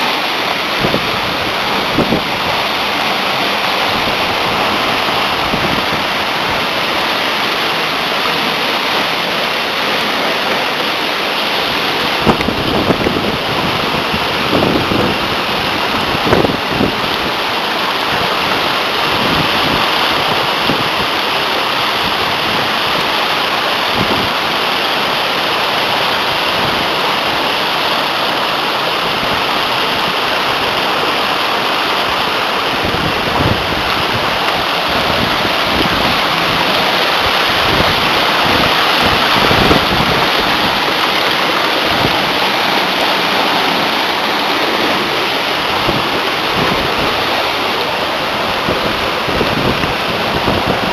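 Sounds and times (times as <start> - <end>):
waterfall rushing: 0.0 - 50.9.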